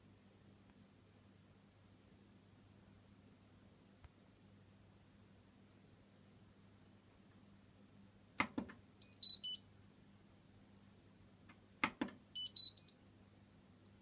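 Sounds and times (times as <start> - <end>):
three-note electronic beep tune: 12.4 - 13.0.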